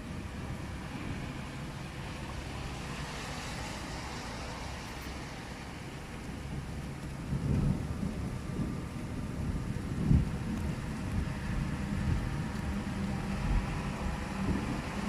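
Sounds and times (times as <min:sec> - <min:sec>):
rain hissing: 0:00.0 - 0:15.0
low rumbles: 0:05.8 - 0:15.0.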